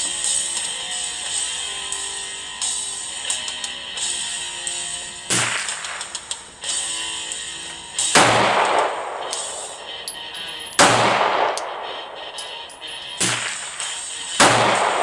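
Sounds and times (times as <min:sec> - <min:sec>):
quiet rock guitar music: 0:00.0 - 0:15.0
gunshots with echo: 0:05.3 - 0:06.1, 0:08.0 - 0:10.1, 0:10.8 - 0:15.0.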